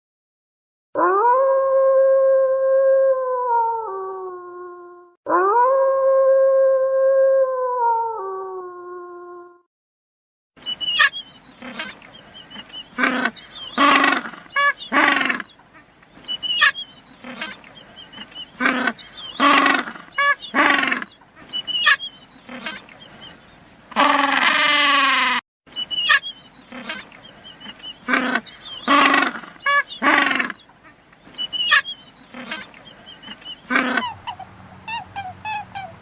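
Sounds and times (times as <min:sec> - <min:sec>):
animal calling: 0:31.5 - 0:36.0.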